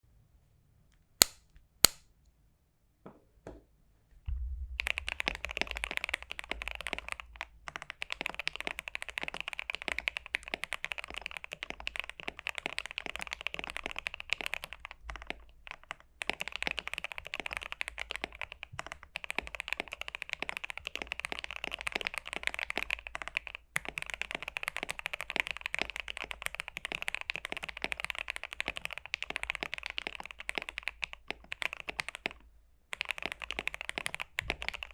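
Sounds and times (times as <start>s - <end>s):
mechanical keyboard typing: 4.8s - 34.9s.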